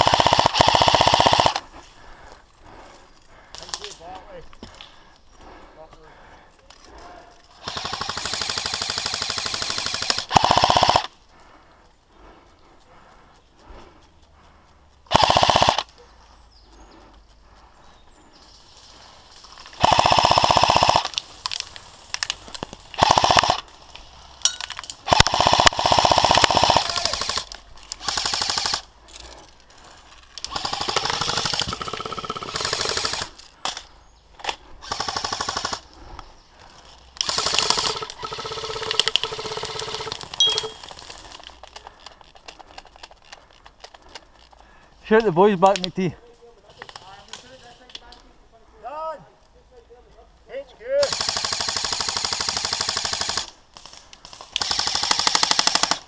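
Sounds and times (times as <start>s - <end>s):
airsoft guns full-auto bursts: 0.0s - 1.7s, 7.6s - 11.2s, 15.1s - 15.9s, 19.6s - 21.6s, 22.3s - 23.9s, 24.9s - 29.5s, 30.4s - 33.8s, 34.4s - 36.1s, 37.2s - 41.5s, 51.0s - 56.0s.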